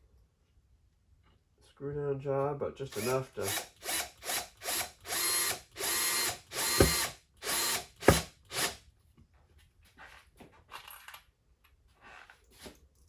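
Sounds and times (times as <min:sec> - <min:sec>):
power drill driving screws: 0:02.9 - 0:08.8.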